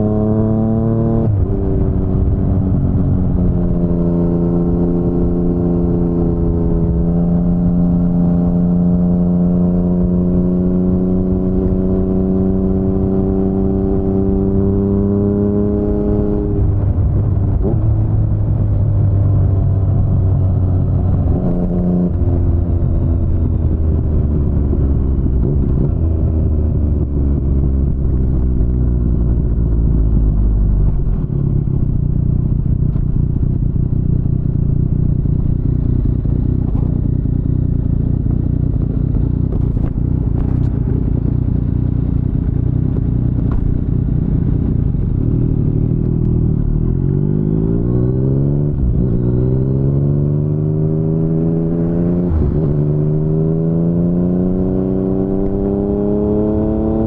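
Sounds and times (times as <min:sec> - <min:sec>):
motorcycle engine: 0:00.0 - 0:57.0.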